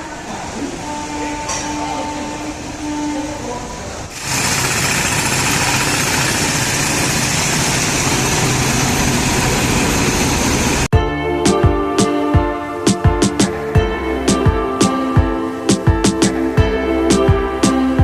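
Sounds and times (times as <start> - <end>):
train wheels rushing on rails: 4.1 - 10.9.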